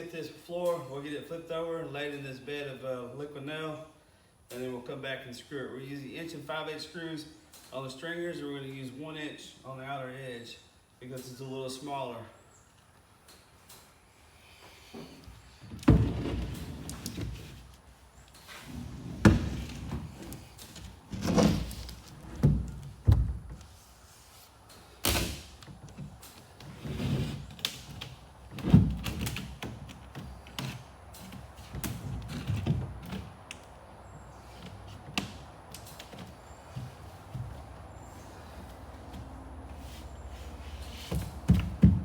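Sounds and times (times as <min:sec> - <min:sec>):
heavy wooden thuds and knocks: 0:21.1 - 0:23.6, 0:41.1 - 0:42.0
sharp wood crack: 0:25.0 - 0:26.4.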